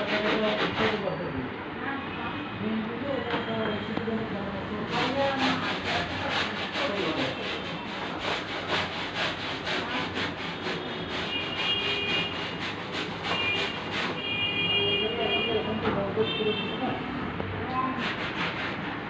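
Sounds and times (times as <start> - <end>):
brush scrubbing upholstery: 0.0 - 1.0, 4.9 - 14.3, 17.8 - 19.0.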